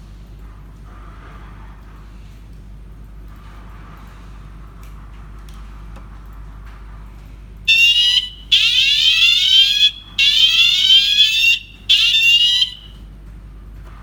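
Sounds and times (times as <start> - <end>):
electronic alarm siren: 7.7 - 13.0.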